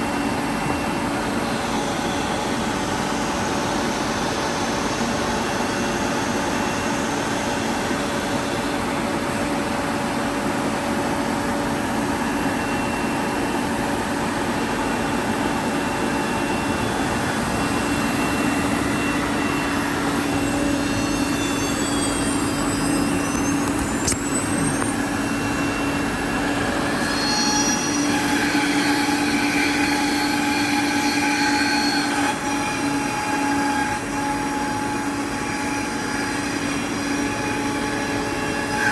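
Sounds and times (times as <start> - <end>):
short sliding high tones: 12.0 - 38.9
router cutting wood: 14.4 - 38.9.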